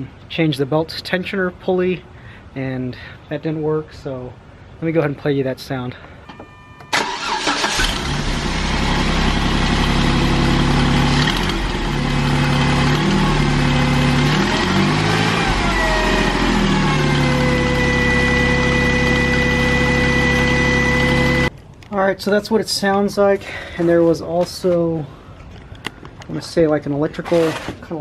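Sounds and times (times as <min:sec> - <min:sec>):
car engine running: 0:07.1 - 0:21.5.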